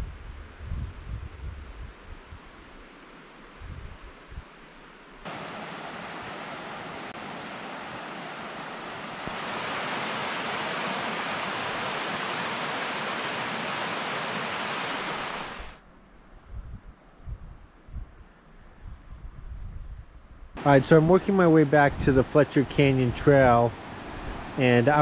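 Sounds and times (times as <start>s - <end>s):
fast-flowing river water: 5.3s - 15.8s.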